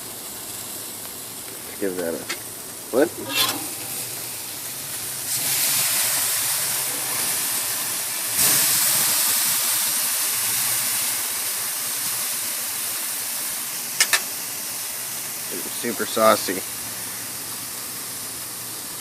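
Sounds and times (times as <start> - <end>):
food sizzling on a grill: 0.0 - 19.0.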